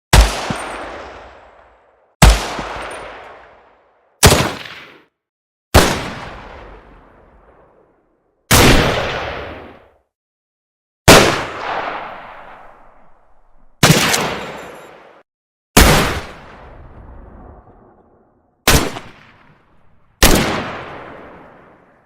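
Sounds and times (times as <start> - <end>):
rifle shots echoing: 0.1 - 5.1, 5.8 - 6.9, 8.5 - 9.6, 11.1 - 12.8, 13.8 - 15.1, 18.7 - 19.4, 20.2 - 21.8.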